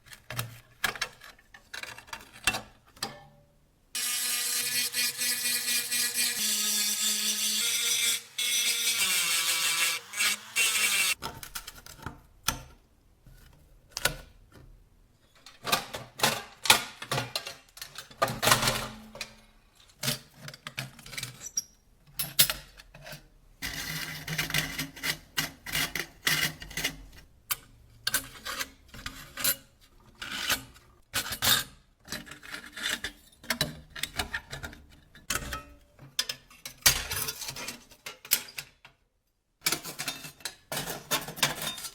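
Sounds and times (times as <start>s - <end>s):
power tool running: 4.0s - 11.2s.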